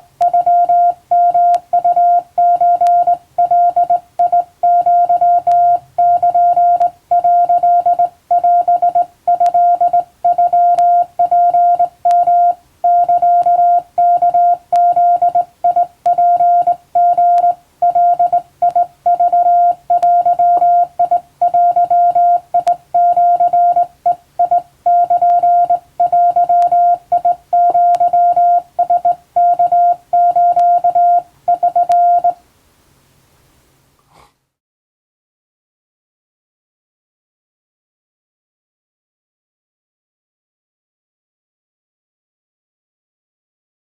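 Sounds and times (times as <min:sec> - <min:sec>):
morse code tone: 0:00.0 - 0:32.4.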